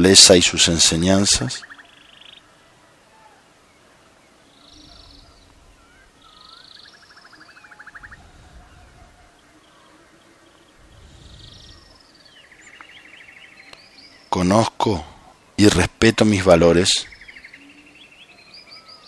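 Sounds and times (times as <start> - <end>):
small birds chirping: 0.0 - 19.0
bird trills: 1.5 - 3.4, 4.4 - 14.4, 17.0 - 19.0
soft low swells: 8.0 - 9.3, 10.7 - 12.0.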